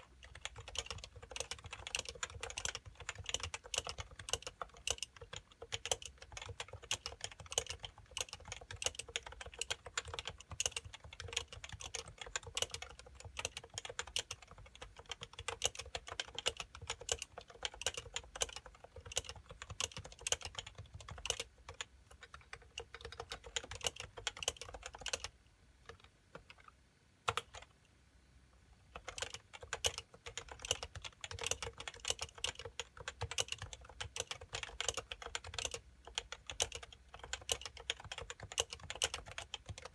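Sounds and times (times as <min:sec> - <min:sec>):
keyboard typing: 0:00.1 - 0:25.3, 0:25.9 - 0:27.7, 0:29.0 - 0:39.9.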